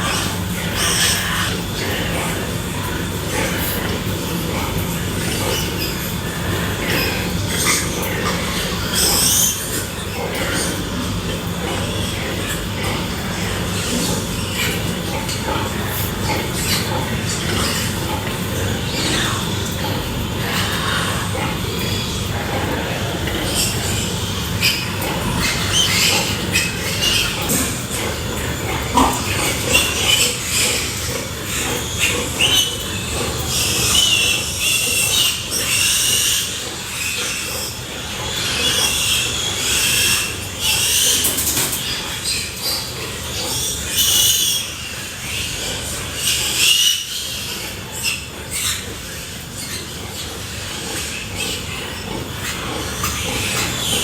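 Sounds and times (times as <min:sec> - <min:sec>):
noisy background: 0:00.0 - 0:54.0
pigs squealing: 0:00.0 - 0:54.0.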